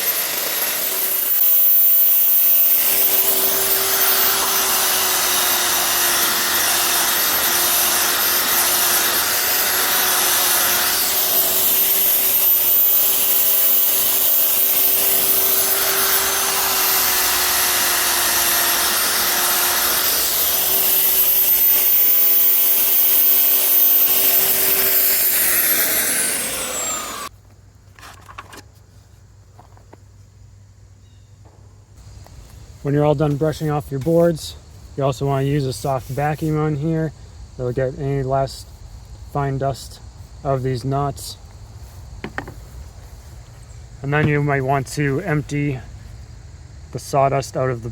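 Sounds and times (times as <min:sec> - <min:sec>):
belt sander grinding wood: 0:00.0 - 0:27.3
sander winding down: 0:00.0 - 0:27.3.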